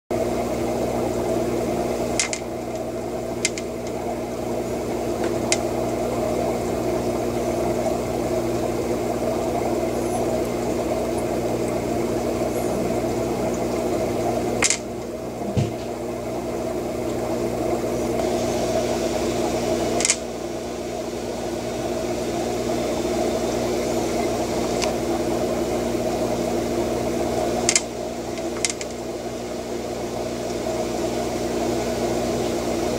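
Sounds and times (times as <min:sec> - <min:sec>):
steady mechanical hum: 0:00.1 - 0:32.9.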